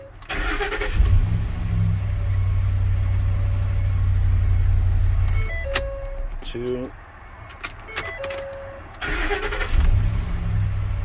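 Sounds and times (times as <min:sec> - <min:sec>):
truck engine starting and idling: 0:00.0 - 0:06.1, 0:08.0 - 0:11.0.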